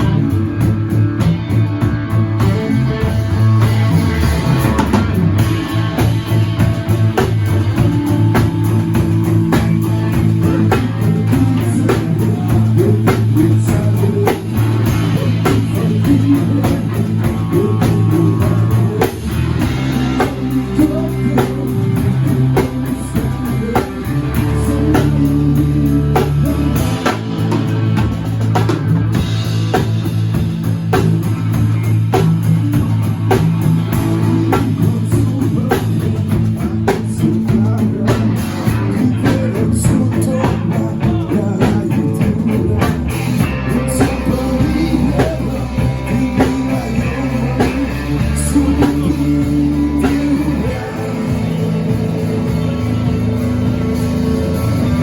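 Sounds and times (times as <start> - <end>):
drums keeping steady beat: 0.0 - 55.0
live rock band: 0.0 - 55.0.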